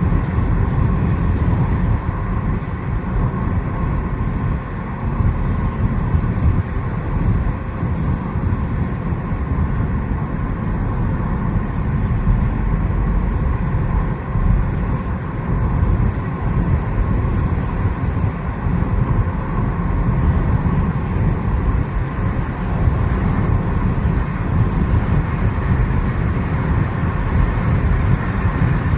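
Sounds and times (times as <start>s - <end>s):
car road noise: 0.0s - 28.9s
faint wheel whine: 0.0s - 28.9s.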